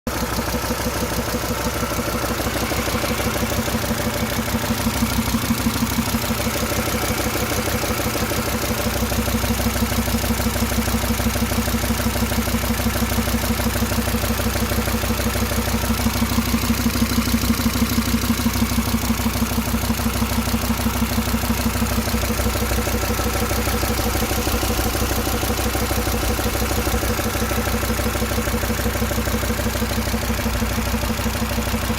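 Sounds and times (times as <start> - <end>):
engine idling with knocking: 0.1 - 31.9.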